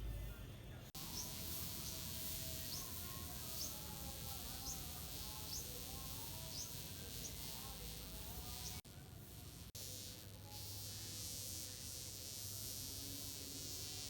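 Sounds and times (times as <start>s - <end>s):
wasp buzzing: 0.9s - 14.0s.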